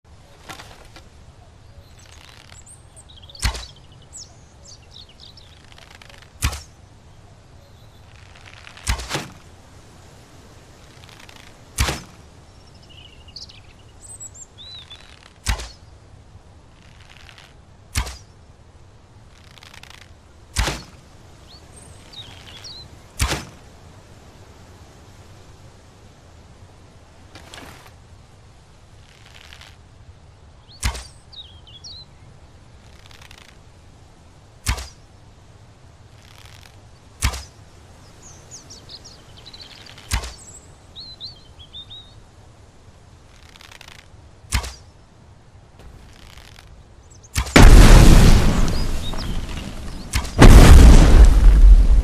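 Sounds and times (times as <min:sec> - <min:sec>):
birds chirping faintly: 0:00.0 - 0:52.0
arrow shot thwacks: 0:03.4 - 0:03.8, 0:06.4 - 0:06.7, 0:08.7 - 0:09.4, 0:11.8 - 0:12.2, 0:15.4 - 0:15.8, 0:17.9 - 0:18.3, 0:20.5 - 0:21.0, 0:23.2 - 0:23.6, 0:30.8 - 0:31.1, 0:34.6 - 0:35.0, 0:37.2 - 0:37.5, 0:40.1 - 0:40.4, 0:44.5 - 0:44.9, 0:47.3 - 0:52.0.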